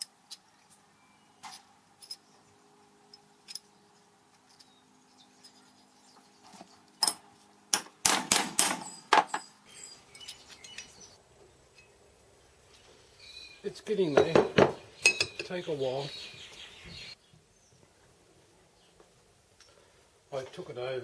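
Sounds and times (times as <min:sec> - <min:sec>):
sharp metal knocks: 0:07.0 - 0:09.5.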